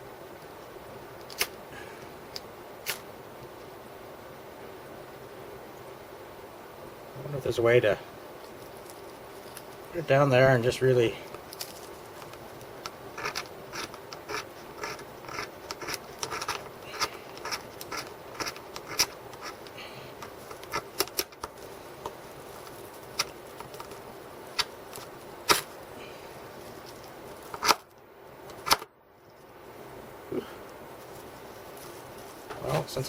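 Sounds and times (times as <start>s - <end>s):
metal scraping ferro rod: 13.2s - 19.7s.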